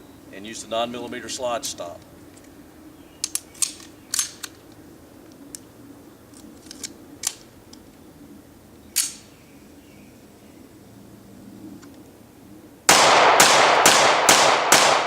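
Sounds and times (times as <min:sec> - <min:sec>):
pistol parts clicking: 0:03.2 - 0:04.8, 0:06.4 - 0:07.8, 0:09.0 - 0:09.3.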